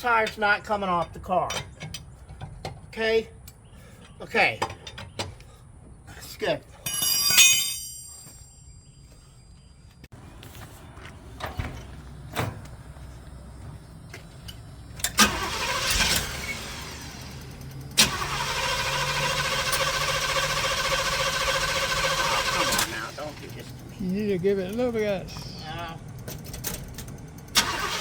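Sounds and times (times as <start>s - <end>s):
starter clicks and clunks: 0.1s - 5.5s, 13.6s - 28.0s
car engine running: 10.6s - 28.0s.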